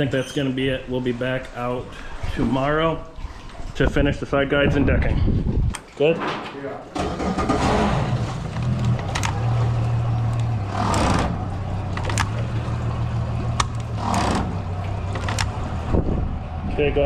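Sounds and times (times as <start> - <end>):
motor humming: 8.0 - 16.7
sharp clicks: 8.5 - 9.5, 10.3 - 12.5, 15.1 - 15.6.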